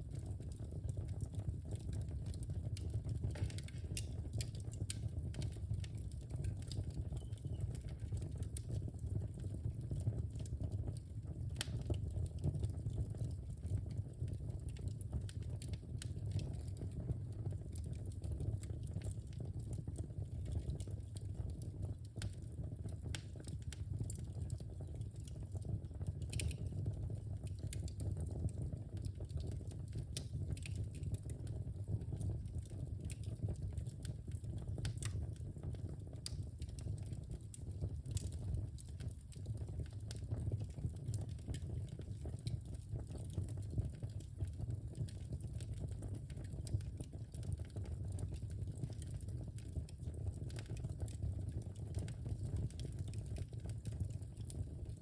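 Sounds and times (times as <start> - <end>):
fire crackling and popping: 0.0 - 55.0
flames rumbling: 0.0 - 55.0.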